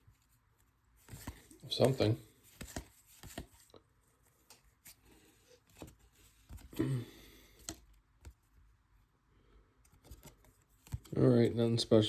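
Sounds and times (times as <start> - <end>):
card rustle: 0.0 - 6.8, 9.8 - 11.5
cards tapping and sliding: 1.0 - 3.7, 4.3 - 6.8, 7.4 - 8.6, 9.9 - 11.2.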